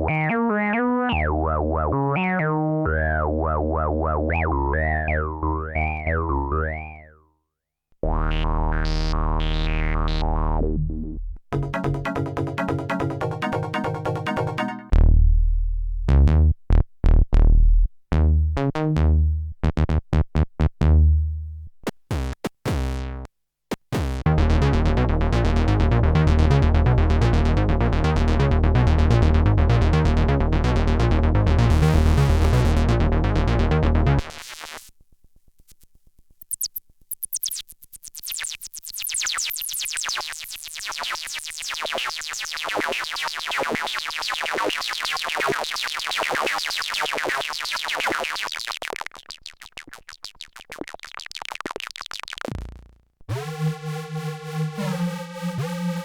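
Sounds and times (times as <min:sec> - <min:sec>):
synthesizer bass notes: 0:08.0 - 0:21.6, 0:24.0 - 0:34.3, 0:52.4 - 0:56.0
bright fast synth sequence: 0:11.6 - 0:14.9, 0:53.3 - 0:56.0
rhythmic sustained synth sound: 0:11.6 - 0:14.9, 0:53.3 - 0:56.0.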